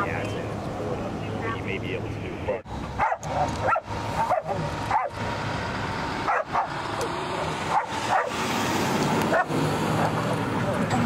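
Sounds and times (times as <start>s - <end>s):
dogs whining and yipping: 3.0s - 5.2s, 7.4s - 8.4s.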